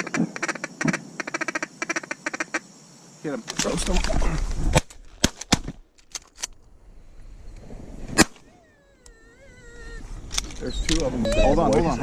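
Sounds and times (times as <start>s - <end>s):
shotgun shots: 8.2s - 8.5s.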